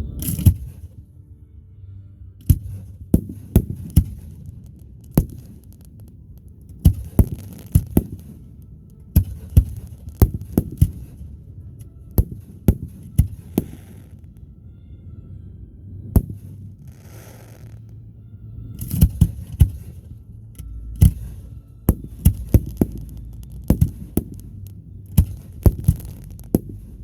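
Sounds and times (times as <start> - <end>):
firework crackling: 0.0 - 1.0, 2.4 - 14.5, 16.0 - 18.0, 18.8 - 20.2, 21.0 - 27.0
firework bangs: 2.5 - 14.5, 15.9 - 17.9, 18.8 - 20.1, 21.0 - 27.0.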